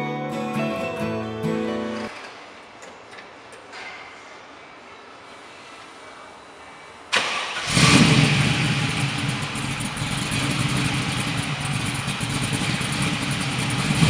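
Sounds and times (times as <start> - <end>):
car engine cranking and starting: 7.1 - 14.0
car engine idling: 7.1 - 14.0.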